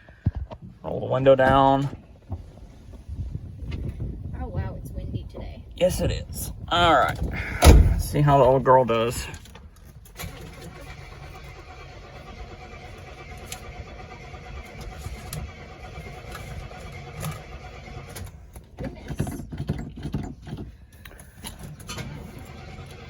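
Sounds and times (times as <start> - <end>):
car starter cranking engine: 7.4 - 8.5, 10.1 - 18.5, 20.0 - 23.0.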